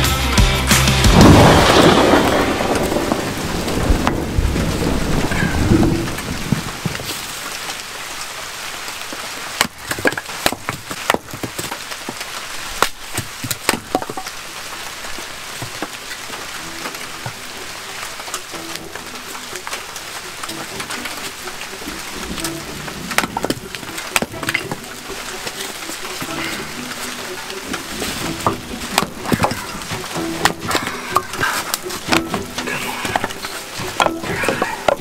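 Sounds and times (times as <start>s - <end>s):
background music: 0.0s - 6.4s, 13.7s - 35.0s
steady rain falling: 0.0s - 35.0s.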